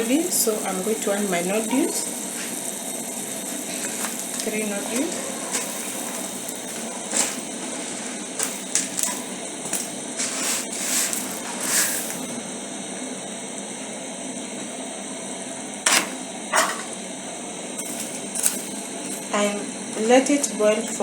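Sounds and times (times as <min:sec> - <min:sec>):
boiling water hissing: 0:00.0 - 0:21.0
noodles rustling and knocking in pot: 0:03.6 - 0:12.3, 0:17.8 - 0:21.0.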